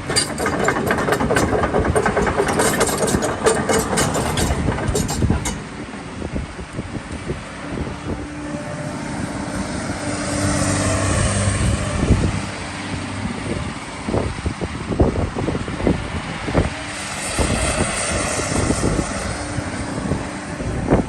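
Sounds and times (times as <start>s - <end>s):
sharp knocks: 0.0s - 5.9s
excavator diesel engine running: 0.0s - 6.6s.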